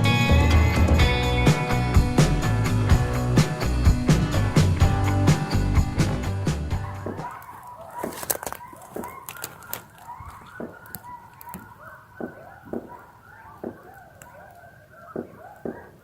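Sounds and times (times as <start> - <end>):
birds honking: 6.8 - 16.0
sharp clicks: 8.0 - 16.0.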